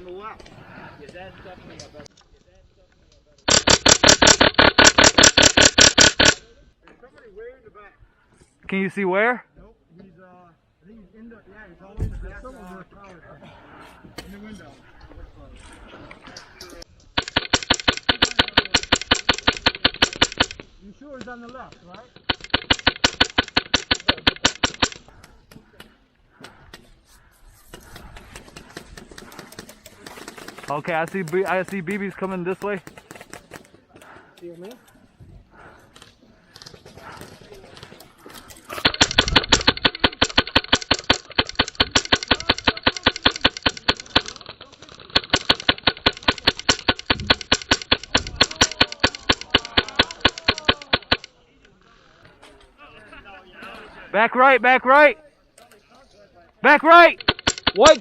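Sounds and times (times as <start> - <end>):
airsoft rifle rapid fire: 3.5 - 6.4, 17.2 - 20.6, 22.2 - 25.0, 38.7 - 51.3, 56.6 - 58.0
faint scattered shots: 3.5 - 6.5, 17.2 - 20.7, 21.8 - 25.2, 27.8 - 34.2, 36.6 - 51.4, 56.6 - 58.0.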